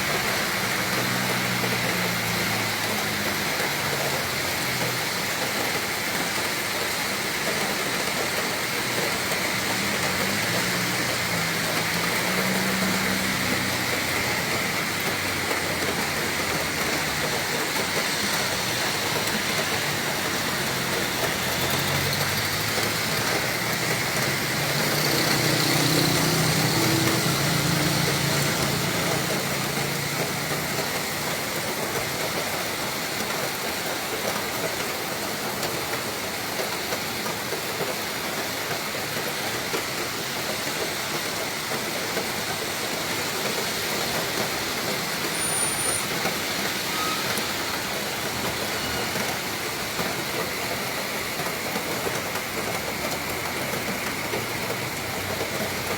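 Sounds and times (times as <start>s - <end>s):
heavy rain pouring: 0.0s - 55.9s
wind: 0.0s - 55.9s
vehicle engine passing: 9.2s - 31.3s.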